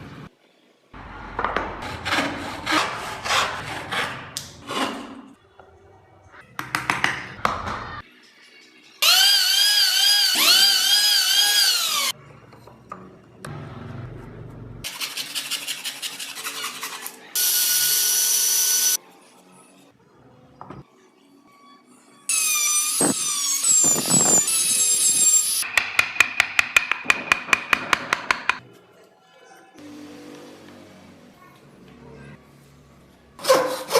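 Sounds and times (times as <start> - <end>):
electric rotary tool whining: 9.0 - 12.1, 17.4 - 19.0, 22.3 - 25.6.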